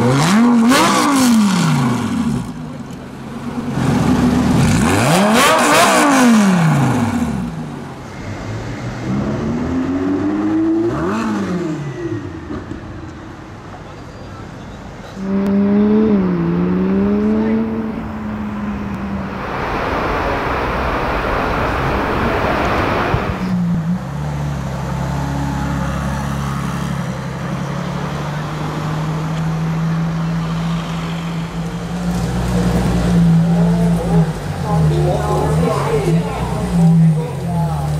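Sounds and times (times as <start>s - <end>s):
passing car rush: 0.0s - 37.9s
car engine wavering: 15.2s - 37.9s.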